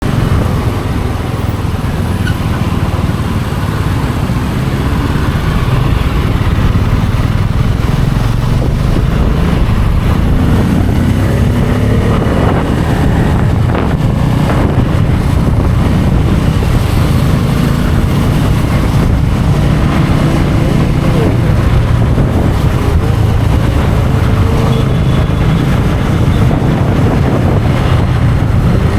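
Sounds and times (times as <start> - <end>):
motorcycle engine running: 0.0 - 28.9.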